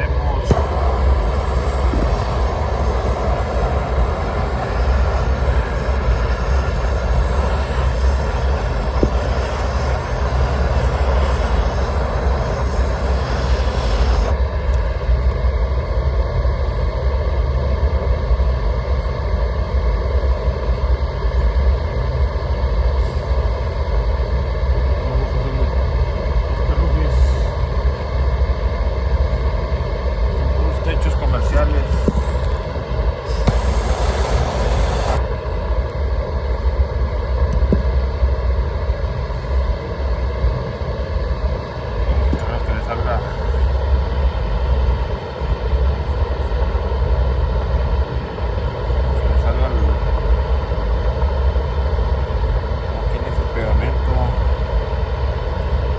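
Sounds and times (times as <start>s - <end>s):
roofing torch hissing: 0.0s - 15.1s, 30.4s - 45.3s.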